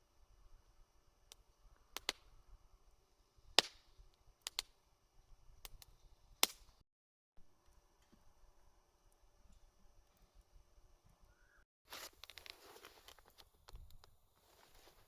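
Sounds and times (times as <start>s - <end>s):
campfire crackling and popping: 1.2s - 2.5s, 3.4s - 4.9s, 5.5s - 6.8s, 12.0s - 15.0s.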